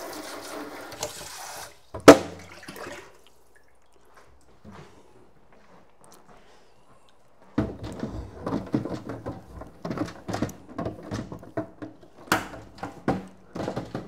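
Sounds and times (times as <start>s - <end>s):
plastic drawer knocking and rattling: 7.6s - 14.0s.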